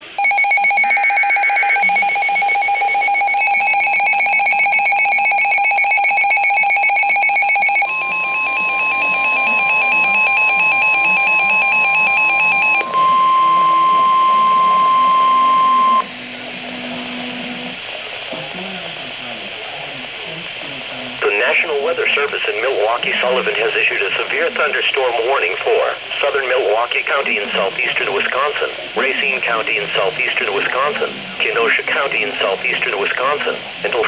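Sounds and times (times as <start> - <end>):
pulsing warbling electronic alarm: 0.2 - 17.7
steady single-pitch alert tone: 0.2 - 17.7.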